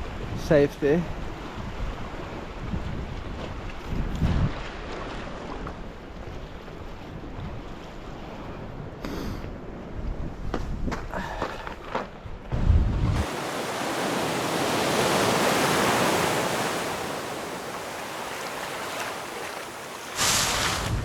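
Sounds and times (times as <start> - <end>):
wind rumble on microphone: 0.0 - 13.3, 20.2 - 21.0
ocean wave breaking on rocks: 13.0 - 21.0.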